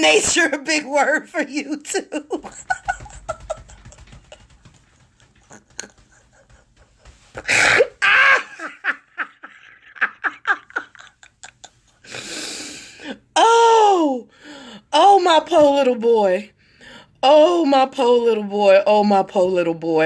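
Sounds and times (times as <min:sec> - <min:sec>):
person laughing hard: 0:02.4 - 0:04.7, 0:05.5 - 0:12.2.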